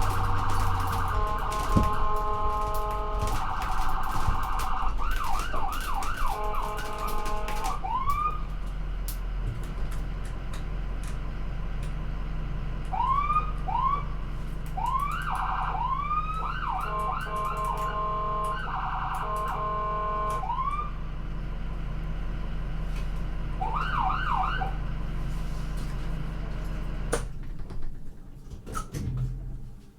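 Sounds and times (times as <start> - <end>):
siren whooping: 0.0 - 8.6, 12.9 - 14.2, 14.8 - 21.0, 23.6 - 24.9
ambulance engine and road rumble: 0.0 - 29.9.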